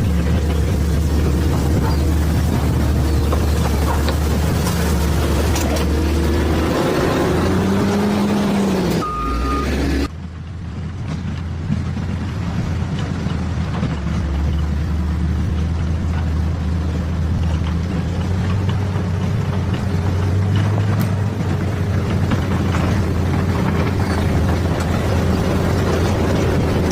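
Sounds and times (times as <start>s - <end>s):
diesel engine running: 0.0s - 26.9s
short beep: 9.0s - 10.1s.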